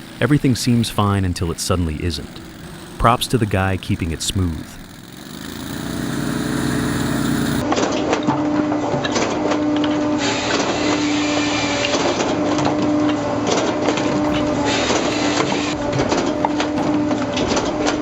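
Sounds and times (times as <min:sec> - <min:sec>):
firewood machinery humming: 0:00.0 - 0:07.6, 0:11.0 - 0:18.0
stump grinder engine under load: 0:00.0 - 0:07.6, 0:11.1 - 0:17.9
wood cracking being split: 0:00.0 - 0:07.6.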